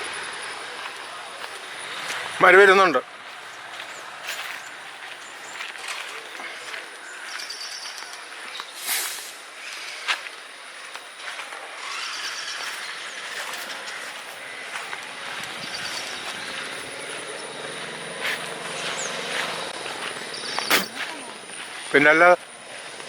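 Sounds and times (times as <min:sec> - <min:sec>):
high bird trill: 0:06.5 - 0:09.0, 0:11.8 - 0:23.0.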